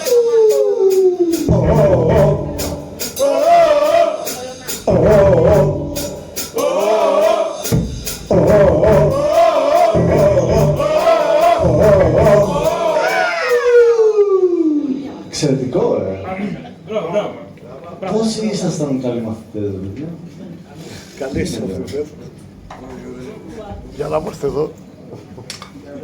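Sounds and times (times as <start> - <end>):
sharp rhythmic percussion: 0.0 - 13.7
men singing together: 0.0 - 13.8.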